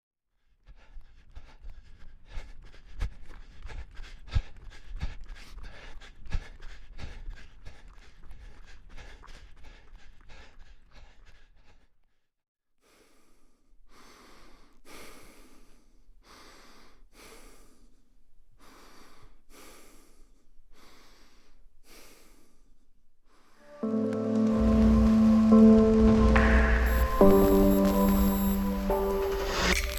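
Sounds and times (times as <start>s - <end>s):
person breathing heavily: 12.8s - 23.7s.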